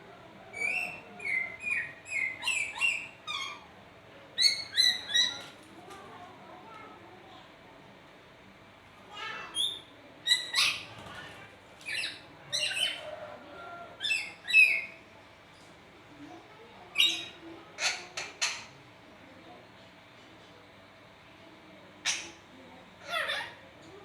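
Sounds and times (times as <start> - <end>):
parrot squawks and chirps: 0.6 - 3.6, 17.0 - 18.7.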